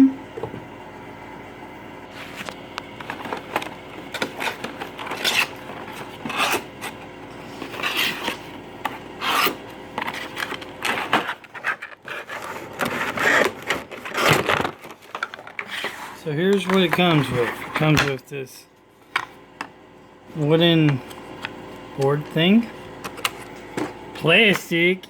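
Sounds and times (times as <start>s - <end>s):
cardboard and plastic rubbing: 2.1s - 18.1s.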